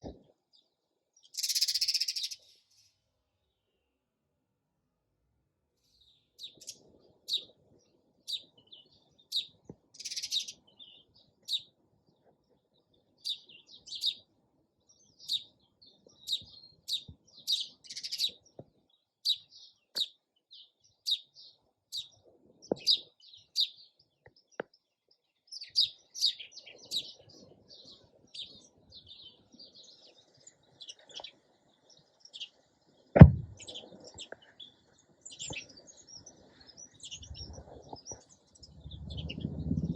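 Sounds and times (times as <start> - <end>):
sparrows chirping: 0.4 - 4.0, 5.8 - 39.9
sharp thump: 33.2 - 33.6.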